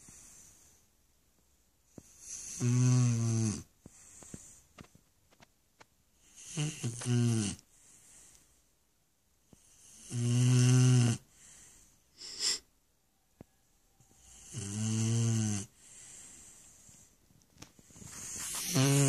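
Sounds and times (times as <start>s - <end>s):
dog snoring: 1.9s - 4.4s, 6.2s - 7.7s, 9.6s - 12.6s, 14.0s - 17.1s, 17.9s - 19.0s
dog breathing: 17.8s - 19.0s.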